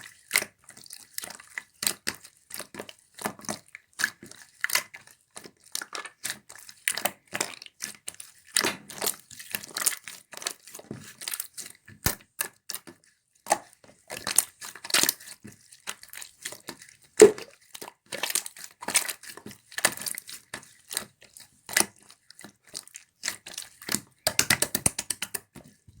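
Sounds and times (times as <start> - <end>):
slime sticky pops and crackles: 17.2 - 17.5.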